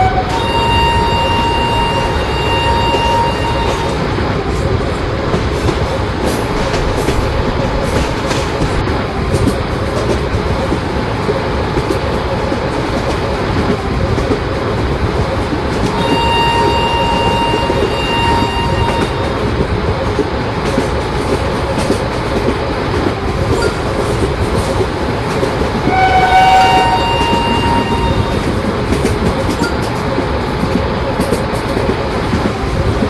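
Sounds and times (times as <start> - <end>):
train horn blasts: 0.0 - 4.0, 16.0 - 19.3, 25.8 - 28.5
electric train rolling rumble: 0.0 - 33.0
train wheel clatter: 0.0 - 33.0.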